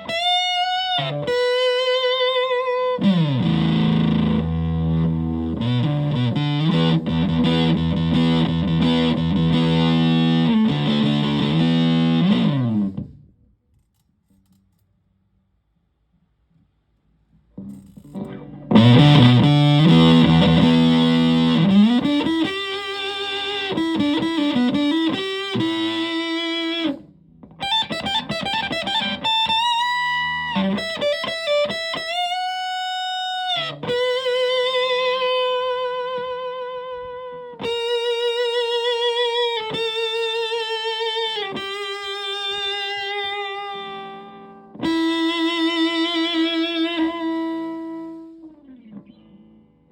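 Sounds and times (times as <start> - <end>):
fuzzy electric guitar chord: 0.0 - 13.1, 17.6 - 27.0
electric guitar lead line: 0.0 - 13.2, 17.6 - 49.8.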